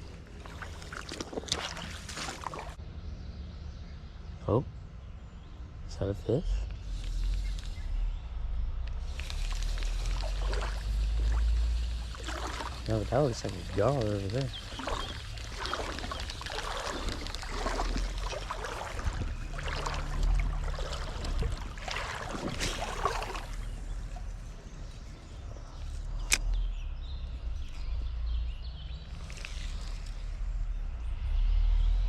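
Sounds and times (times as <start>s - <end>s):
creek water sloshing and trickling: 0.0s - 2.8s, 9.0s - 26.6s, 27.6s - 31.2s
wind rumble on microphone: 2.6s - 32.0s.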